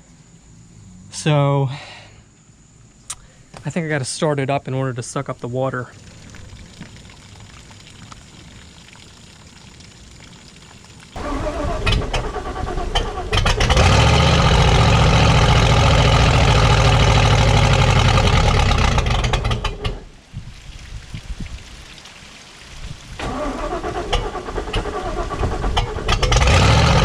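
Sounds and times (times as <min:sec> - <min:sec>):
starter cranking engine: 0:11.2 - 0:20.0, 0:23.2 - 0:27.0
boat engine running: 0:11.2 - 0:20.1.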